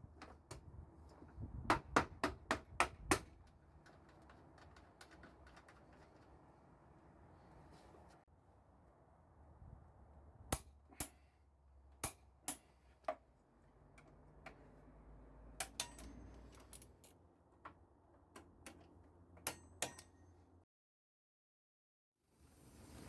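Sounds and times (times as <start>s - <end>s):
metallic tool clicks and clinks: 15.6s - 17.2s, 19.4s - 20.3s.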